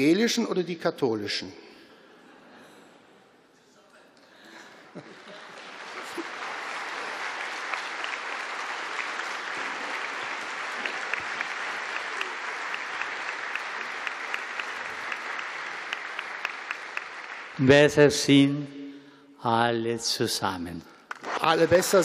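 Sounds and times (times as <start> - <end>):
audience applauding: 4.9 - 18.0.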